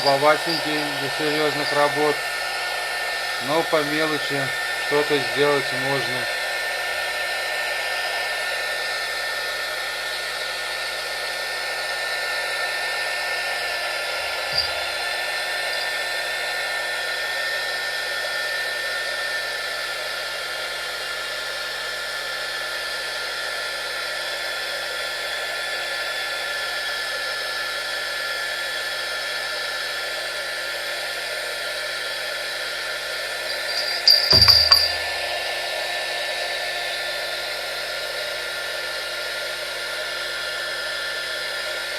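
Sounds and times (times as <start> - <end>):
heat gun fan whirring: 0.0 - 18.3, 31.5 - 38.2
short knock: 33.5 - 35.2.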